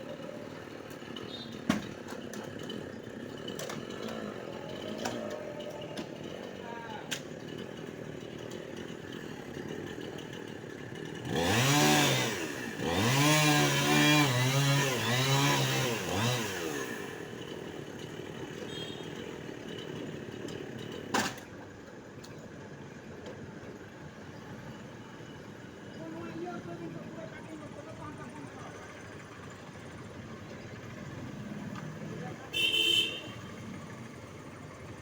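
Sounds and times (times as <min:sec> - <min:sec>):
chainsaw revving: 0:02.1 - 0:21.1.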